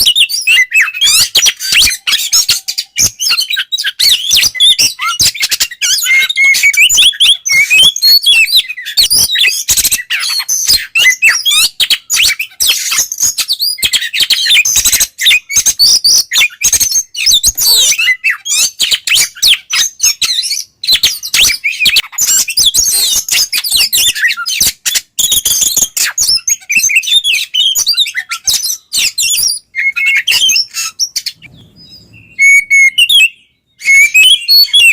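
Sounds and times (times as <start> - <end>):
bird singing whistles: 0.0 - 34.9.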